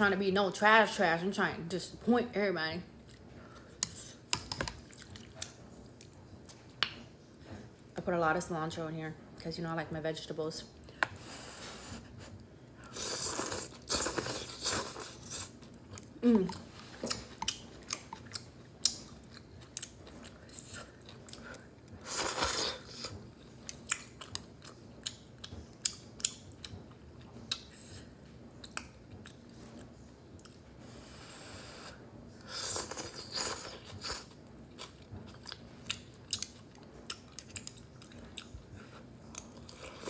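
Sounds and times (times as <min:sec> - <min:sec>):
chewing noodle soup: 0:03.0 - 0:07.0, 0:11.9 - 0:30.6, 0:32.4 - 0:40.0.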